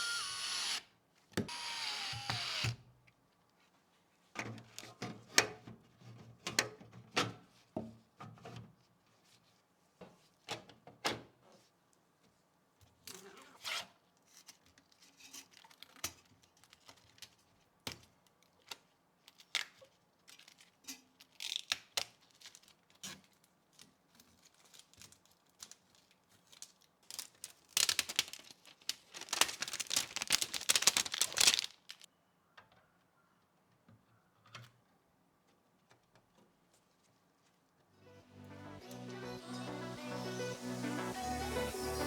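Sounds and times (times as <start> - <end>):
packaging crinkling and tearing: 19.2 - 23.5, 24.2 - 32.1.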